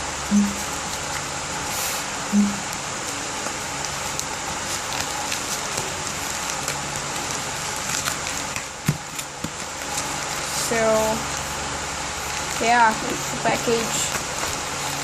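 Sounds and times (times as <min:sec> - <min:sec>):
package wrapping rustling: 0:03.0 - 0:11.6, 0:12.2 - 0:15.0.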